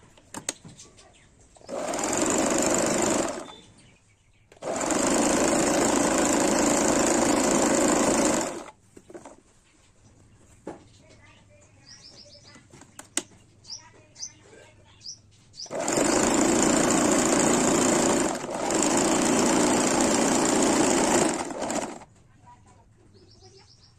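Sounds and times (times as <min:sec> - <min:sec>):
sewing machine running fast: 0:01.7 - 0:03.6, 0:04.6 - 0:08.7, 0:15.7 - 0:22.1
bird chirps: 0:03.4 - 0:04.6, 0:08.9 - 0:15.8, 0:23.0 - 0:23.9.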